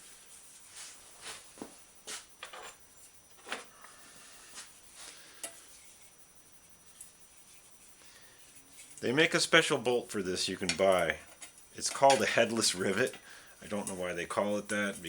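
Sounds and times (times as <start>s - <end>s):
light metallic clinks and taps: 5.4s - 6.1s.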